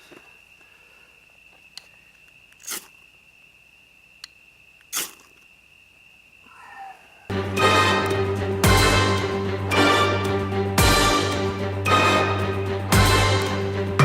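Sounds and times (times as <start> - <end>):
crickets trilling: 0.0 - 7.4
sharp scraping hisses: 2.5 - 3.0, 4.9 - 5.4
background music: 7.3 - 14.0.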